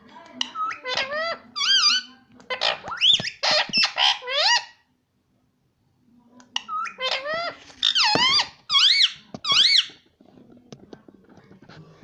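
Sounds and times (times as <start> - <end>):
parrot calling: 0.4 - 4.9, 6.6 - 10.0.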